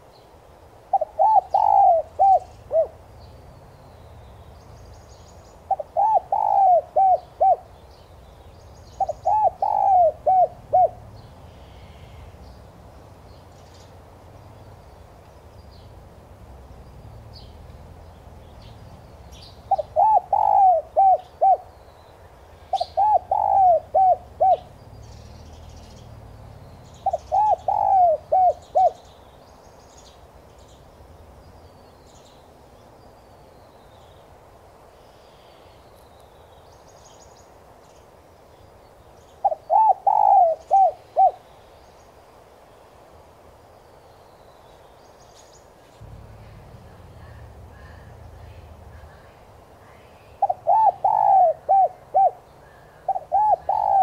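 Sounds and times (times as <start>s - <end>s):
small birds chirping: 0.0s - 54.0s
dove cooing: 0.9s - 3.1s, 5.7s - 7.7s, 9.0s - 12.4s, 19.7s - 21.7s, 22.7s - 24.8s, 27.0s - 29.0s, 39.4s - 41.4s, 50.4s - 54.0s.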